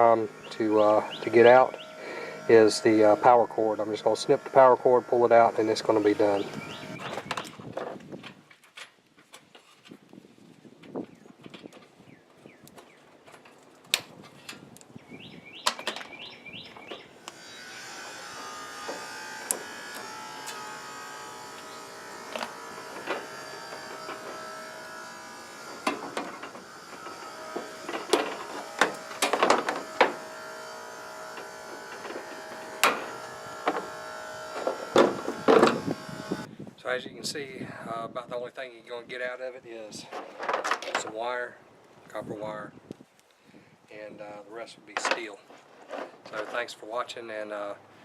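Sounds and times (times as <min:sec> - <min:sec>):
small electric motor buzzing: 0:00.0 - 0:07.9, 0:16.9 - 0:36.5.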